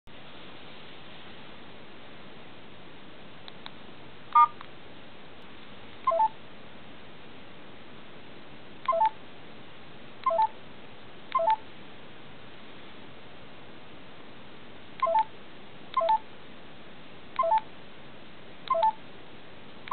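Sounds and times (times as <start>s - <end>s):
faint steady hiss: 0.1s - 19.9s
phone keypad beeps: 4.4s - 4.6s, 6.1s - 6.4s, 8.9s - 9.2s, 10.2s - 10.6s, 11.3s - 11.6s, 15.0s - 15.3s, 16.0s - 16.2s, 17.4s - 17.7s, 18.7s - 19.0s.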